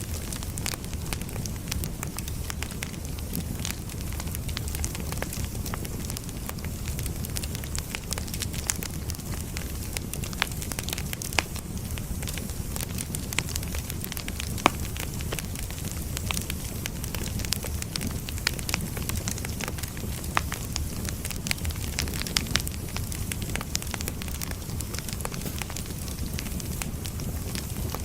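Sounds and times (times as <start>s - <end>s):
firewood crackling and popping: 0.0s - 28.0s
low rumble of flame: 0.0s - 28.0s.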